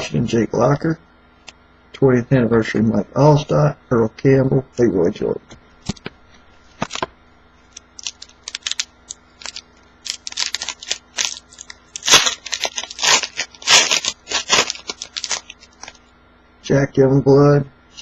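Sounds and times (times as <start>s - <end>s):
foil wrapper tearing and crinkling: 6.7s - 7.1s, 7.7s - 16.1s.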